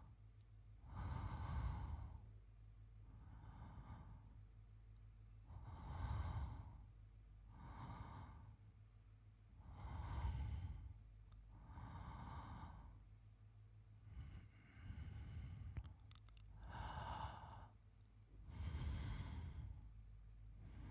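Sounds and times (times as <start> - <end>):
man breathing in sleep: 0.8 - 2.3, 3.0 - 4.3, 5.5 - 6.9, 7.5 - 8.6, 9.6 - 13.1, 14.0 - 17.8, 18.4 - 20.9.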